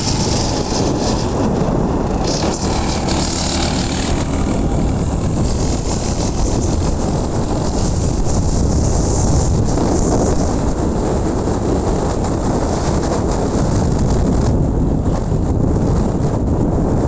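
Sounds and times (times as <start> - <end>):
small generator engine running: 0.0 - 9.2.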